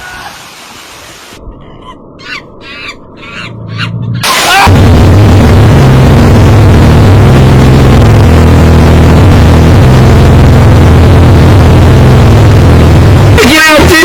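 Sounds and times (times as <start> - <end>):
deep rumble: 3.0 - 13.9.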